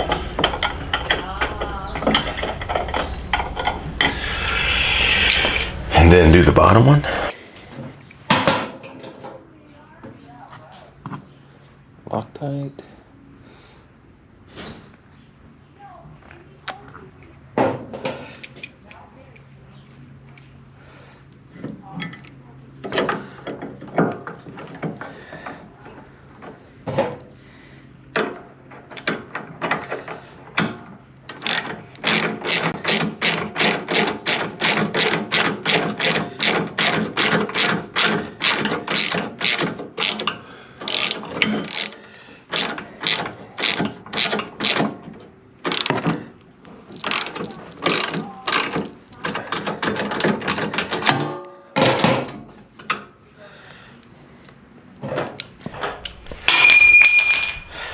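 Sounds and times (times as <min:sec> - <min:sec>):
hand ratchet clicking: 0:00.0 - 0:05.9, 0:55.8 - 0:57.9.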